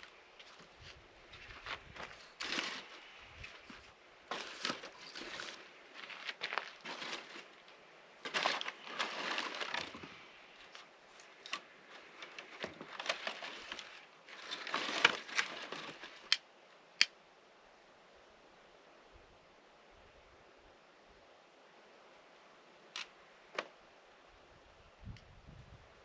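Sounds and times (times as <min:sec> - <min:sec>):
crunching and crinkling: 0:00.0 - 0:16.4.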